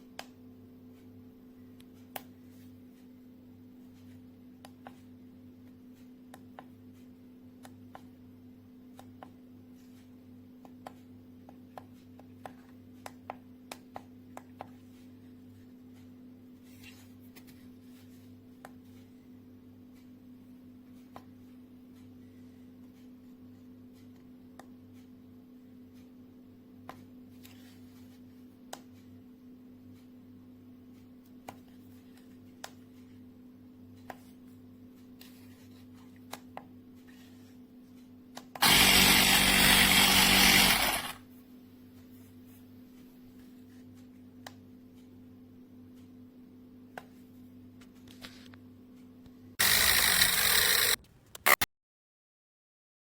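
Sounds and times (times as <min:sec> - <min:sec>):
faint steady hum: 0:00.0 - 0:51.6
mini air compressor running: 0:38.6 - 0:41.2, 0:49.6 - 0:51.6.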